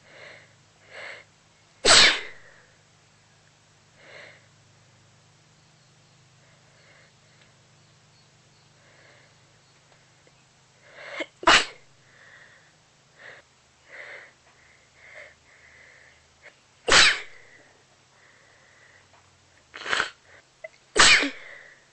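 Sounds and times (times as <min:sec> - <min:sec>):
soft breaths: 0:00.0 - 0:01.7, 0:02.4 - 0:05.4, 0:06.2 - 0:16.8, 0:17.4 - 0:20.8, 0:21.4 - 0:21.9
person sneezing: 0:01.8 - 0:02.5, 0:11.1 - 0:11.8, 0:16.9 - 0:17.6, 0:19.8 - 0:20.2, 0:21.0 - 0:21.7.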